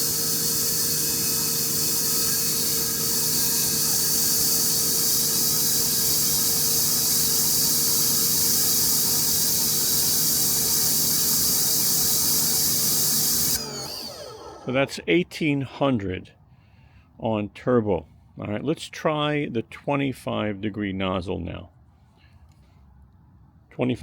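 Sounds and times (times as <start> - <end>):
water spray hissing: 0.0 - 13.8
pressure washer motor hum: 0.0 - 14.8.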